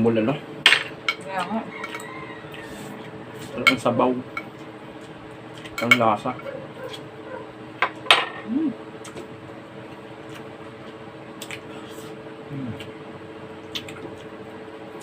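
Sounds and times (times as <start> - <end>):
steady background hum: 0.0 - 15.0
person humming: 8.4 - 8.8, 12.5 - 12.9.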